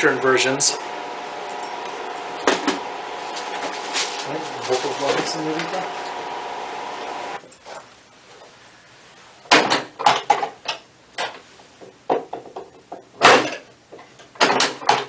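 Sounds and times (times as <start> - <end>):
sharp knocks and clatters: 9.5 - 15.0.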